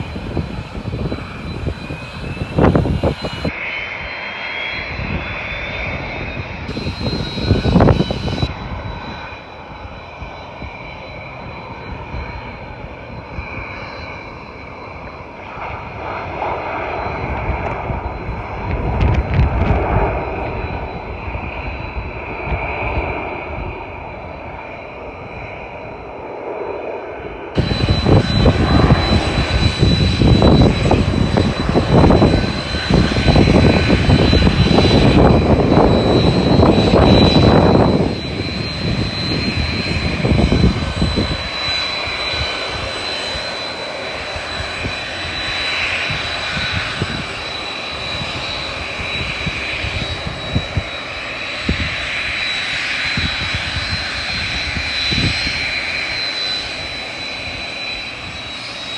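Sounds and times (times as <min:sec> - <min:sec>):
airliner engines roaring: 0:00.0 - 0:58.9.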